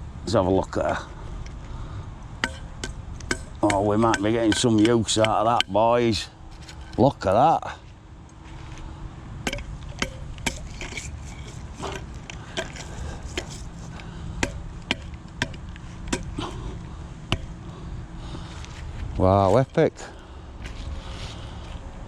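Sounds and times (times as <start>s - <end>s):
steady low rumble: 0.0s - 22.0s
metallic knocks and clicks: 2.4s - 5.8s, 9.4s - 13.7s.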